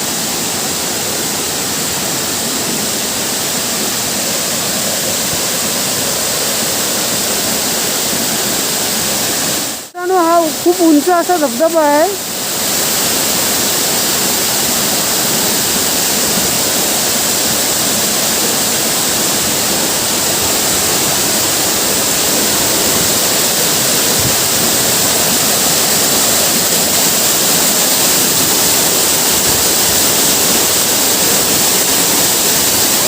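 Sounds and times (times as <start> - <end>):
waterfall rushing: 0.0 - 33.0.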